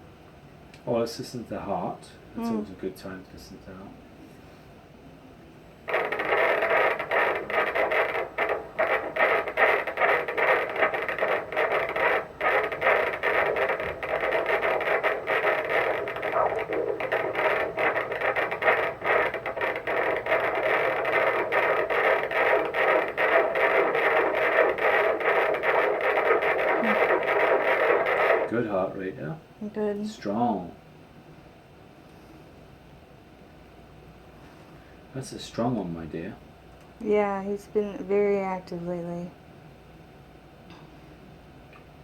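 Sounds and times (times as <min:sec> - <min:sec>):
doppler fetal heartbeat whoosh: 0:05.9 - 0:28.5.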